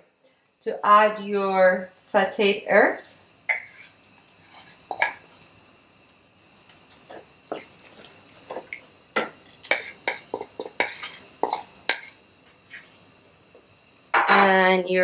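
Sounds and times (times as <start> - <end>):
utensil scraping and clinking on pan: 9.6 - 12.8.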